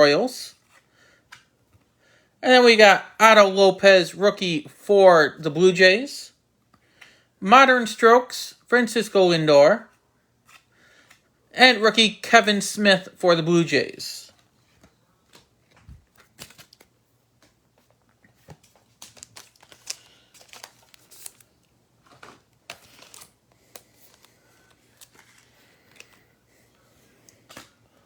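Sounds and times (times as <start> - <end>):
cards clicking and tapping: 14.3 - 21.4, 27.2 - 27.8
wrapper rustling: 14.4 - 28.0.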